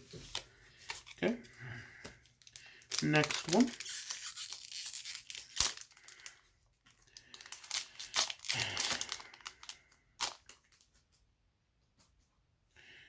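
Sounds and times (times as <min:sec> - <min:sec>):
foil pack rustling: 0:02.4 - 0:06.4, 0:07.0 - 0:10.5.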